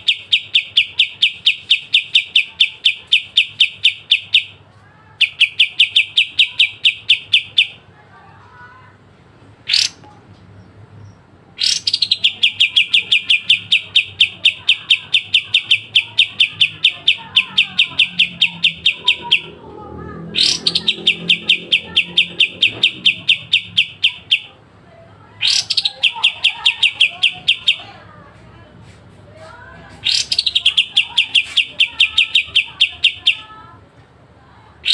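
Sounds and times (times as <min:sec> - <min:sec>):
bird singing rapid trill: 0:00.0 - 0:04.6, 0:05.2 - 0:07.8, 0:09.7 - 0:10.0, 0:11.0 - 0:19.6, 0:20.2 - 0:24.5, 0:25.4 - 0:27.9, 0:30.0 - 0:33.6.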